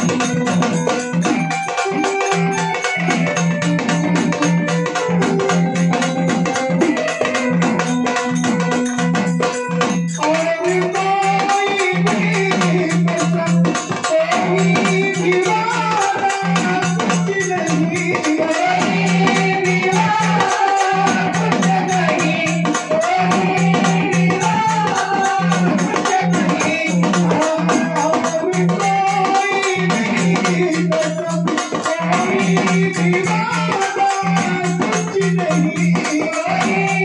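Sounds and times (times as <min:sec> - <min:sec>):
person singing a song: 0:09.1 - 0:37.0.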